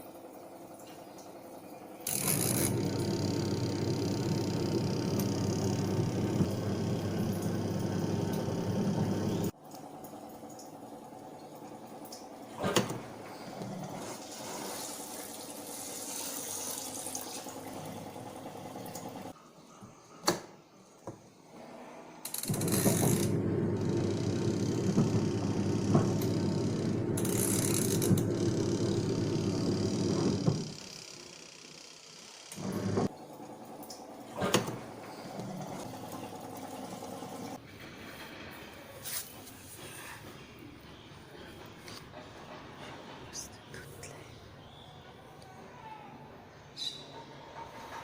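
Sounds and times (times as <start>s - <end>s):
washing machine churning: 0.0s - 19.4s, 22.4s - 38.2s
washing machine clicks: 2.1s - 9.5s, 22.4s - 31.0s.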